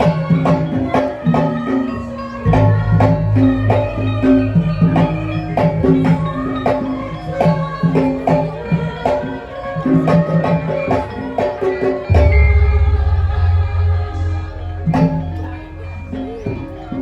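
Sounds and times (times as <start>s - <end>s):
percussion over low sustained notes: 12.0s - 17.0s.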